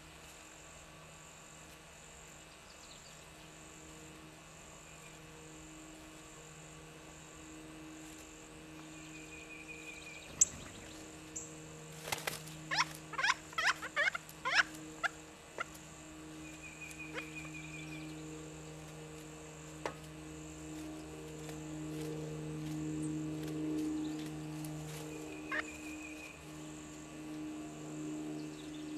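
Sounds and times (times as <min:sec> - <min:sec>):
insect buzz: 0:00.0 - 0:28.9
low hum: 0:00.0 - 0:28.9
woodpecker calls: 0:12.7 - 0:15.8, 0:16.4 - 0:18.0, 0:25.3 - 0:26.4.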